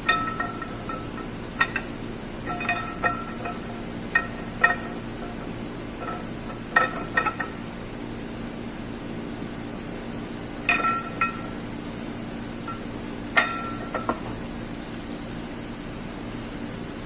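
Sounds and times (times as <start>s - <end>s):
steady background hum: 0.0s - 17.0s.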